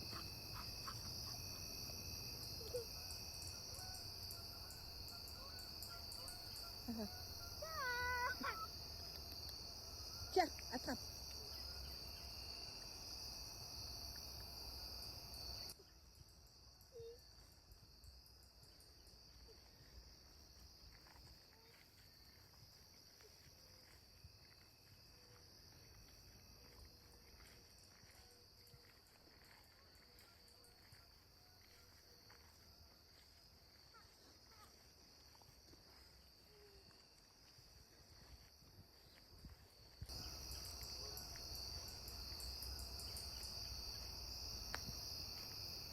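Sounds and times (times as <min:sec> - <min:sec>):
insect chirring: 0:40.1 - 0:45.9.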